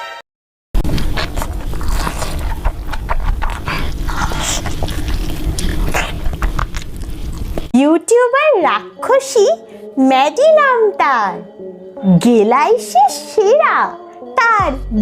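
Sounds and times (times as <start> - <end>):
chewing and crunching: 0.8 - 7.7
heavy low rumble: 0.8 - 7.7.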